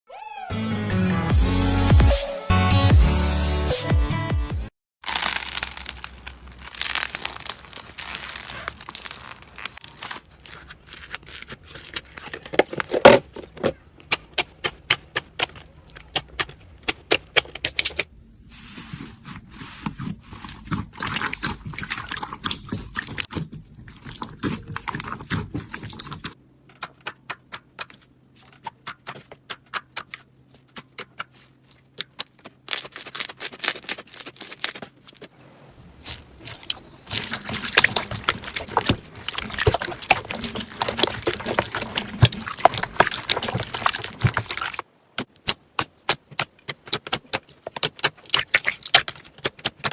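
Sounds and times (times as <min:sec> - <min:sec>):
crunchy slime crackling: 0:05.0 - 0:18.0, 0:29.0 - 0:49.9.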